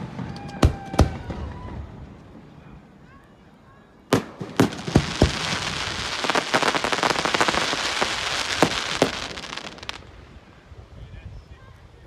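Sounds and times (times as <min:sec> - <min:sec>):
sharp firework bangs: 0:00.0 - 0:02.4, 0:04.1 - 0:10.3
fireworks crackling: 0:00.0 - 0:11.2.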